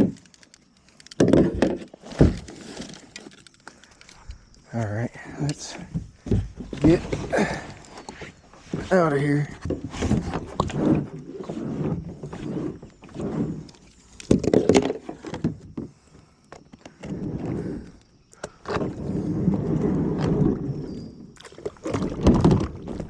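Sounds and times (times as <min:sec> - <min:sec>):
paddle strokes in water: 0:05.6 - 0:23.0
paddle knocking against hull: 0:05.7 - 0:13.4, 0:21.5 - 0:23.0.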